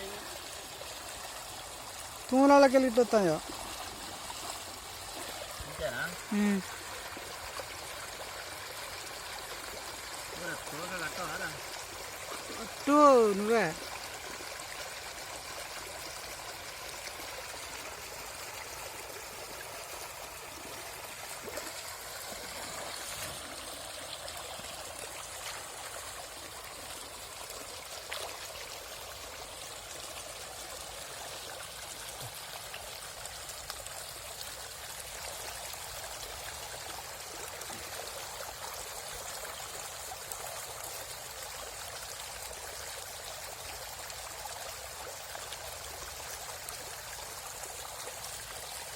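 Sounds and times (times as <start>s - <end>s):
river water rushing: 0.0s - 29.1s.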